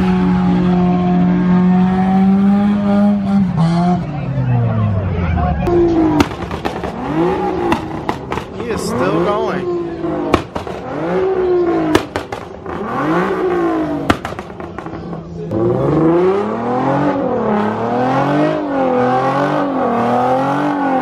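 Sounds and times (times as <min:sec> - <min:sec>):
car engine revving: 0:00.0 - 0:21.0
engine sharp cracks: 0:05.7 - 0:08.8, 0:11.8 - 0:13.2, 0:14.0 - 0:15.3.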